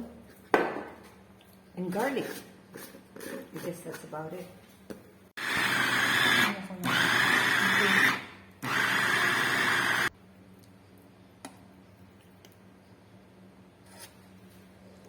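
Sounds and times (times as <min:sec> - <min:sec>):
kitchen blender pulsing: 0:05.4 - 0:10.1.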